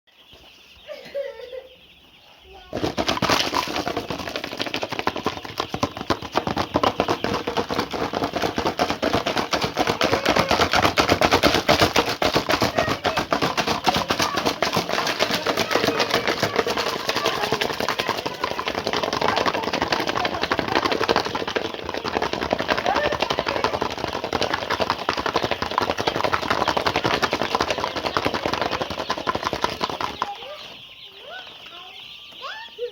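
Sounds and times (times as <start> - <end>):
chicks peeping and pecking: 0.1 - 32.9.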